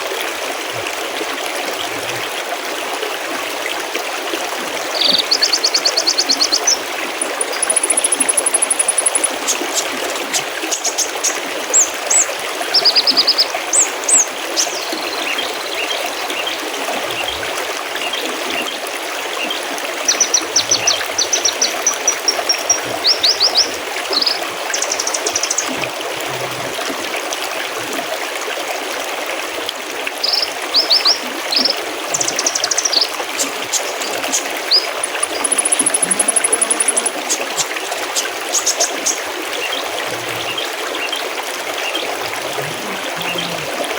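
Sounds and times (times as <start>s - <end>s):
mountain stream babbling: 0.0s - 43.9s
songbirds chirping: 5.0s - 9.8s, 33.7s - 41.2s.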